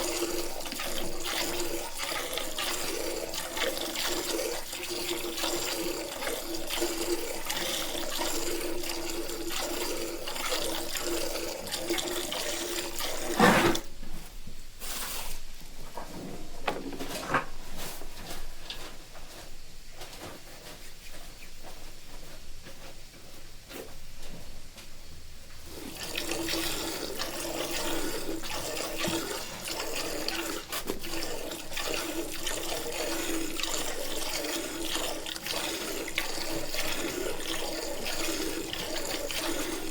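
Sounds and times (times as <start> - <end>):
milk squirting into pail: 0.0 - 13.9, 25.7 - 39.9.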